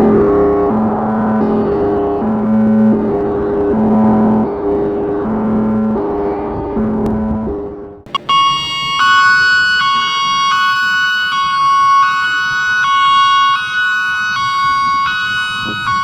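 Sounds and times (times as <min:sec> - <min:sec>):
two-tone warning siren: 0:08.1 - 0:16.0.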